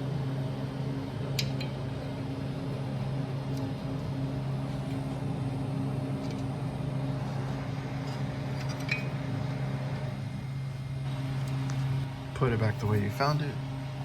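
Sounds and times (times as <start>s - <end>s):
low electrical machine hum: 0.0s - 14.0s.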